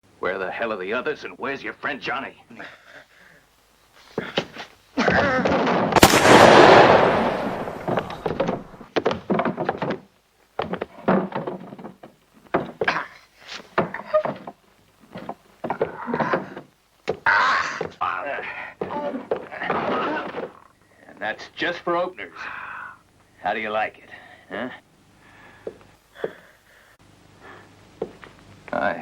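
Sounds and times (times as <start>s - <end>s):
short thuds and blows: 5.1s - 10.0s
loud crashing impact: 5.6s - 8.8s.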